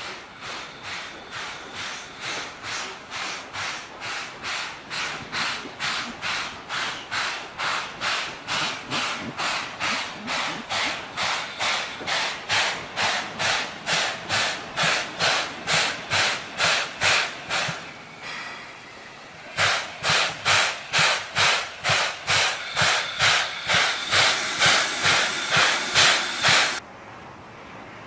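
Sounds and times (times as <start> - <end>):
steam hiss: 0.0 - 26.8
steam locomotive exhaust chuffing: 0.0 - 26.8.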